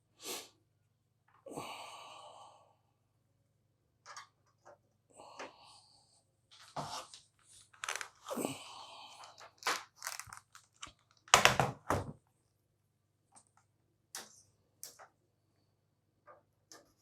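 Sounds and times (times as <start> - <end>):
objects rustling: 6.6 - 8.4, 9.2 - 11.3.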